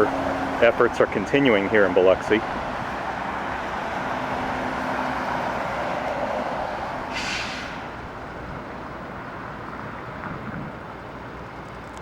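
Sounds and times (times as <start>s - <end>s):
road traffic passing: 0.0s - 12.0s
brief high hiss: 7.1s - 7.9s.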